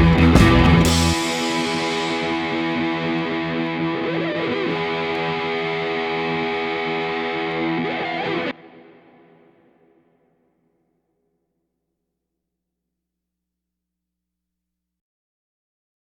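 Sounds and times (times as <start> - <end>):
distorted electric guitar chords: 0.0 - 9.6.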